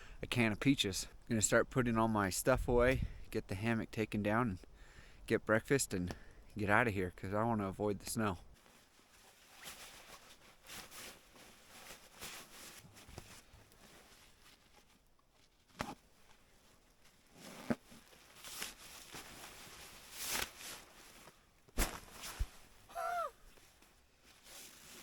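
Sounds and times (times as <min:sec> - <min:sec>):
rustling of camping gear: 0:08.2 - 0:25.0.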